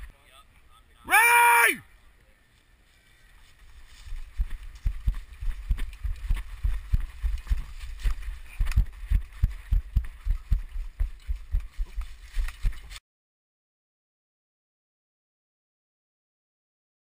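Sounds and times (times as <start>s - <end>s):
running footsteps: 3.4s - 13.0s.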